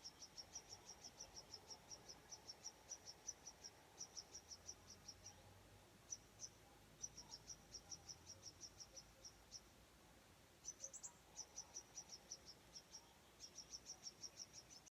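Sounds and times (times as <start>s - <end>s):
cricket chirping: 0.0s - 5.4s, 6.1s - 9.7s, 10.6s - 14.9s.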